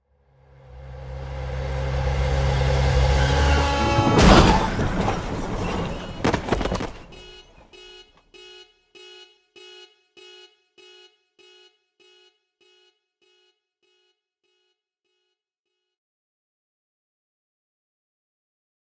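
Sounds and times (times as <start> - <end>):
loud noisy crash: 1.8 - 7.7
repeating horn-like beep: 3.2 - 15.3.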